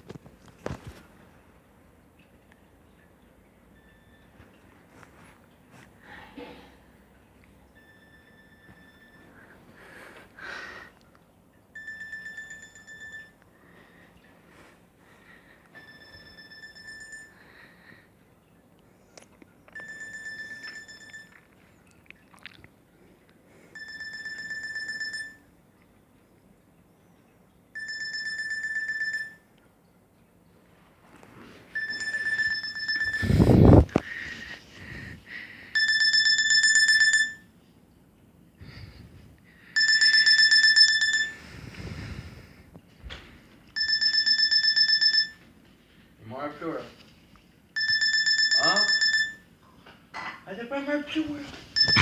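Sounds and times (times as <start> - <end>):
trilled electronic ringtone beep: 7.8 - 9.3, 11.8 - 13.4, 15.8 - 17.4, 19.8 - 21.4, 23.8 - 25.4, 27.8 - 29.5, 31.8 - 33.8, 35.8 - 37.5, 39.8 - 41.5, 43.8 - 45.4, 47.8 - 49.4, 51.8 - 52.0.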